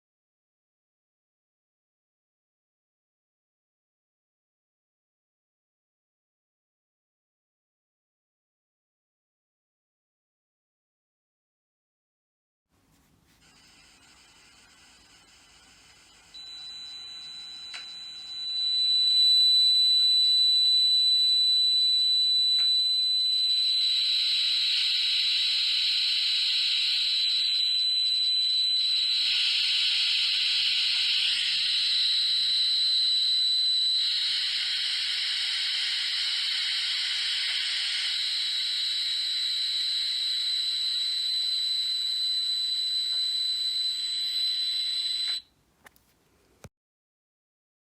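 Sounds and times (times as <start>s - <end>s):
steady high-pitched tone: 13.4s - 45.4s.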